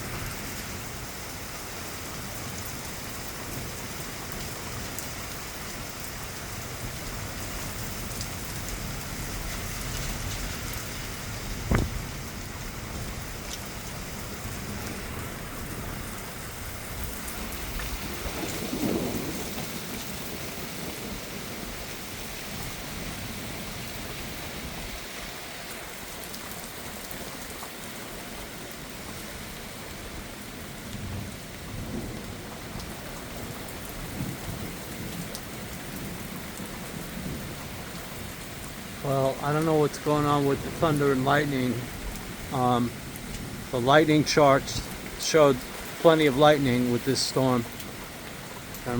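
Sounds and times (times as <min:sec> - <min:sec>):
heavy rain pouring: 0:00.0 - 0:48.9
low thunder rumble: 0:06.7 - 0:23.7, 0:40.2 - 0:47.8
sharp knock: 0:11.7 - 0:12.0.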